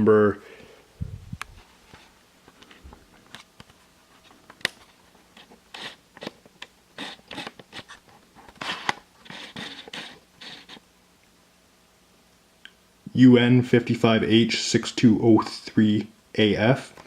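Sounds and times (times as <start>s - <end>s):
rustling and scraping handling: 1.3s - 10.8s.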